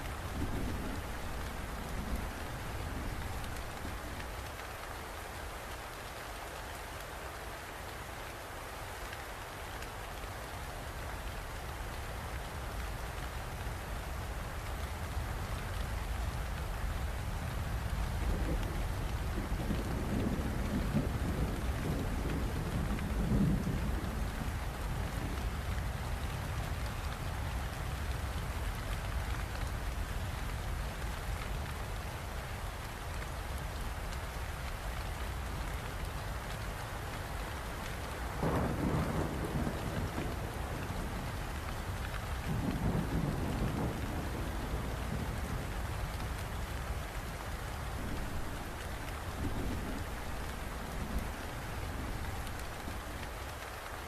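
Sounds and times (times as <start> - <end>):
heavy rain falling: 0.0 - 54.0
thunder rolling: 38.4 - 41.2.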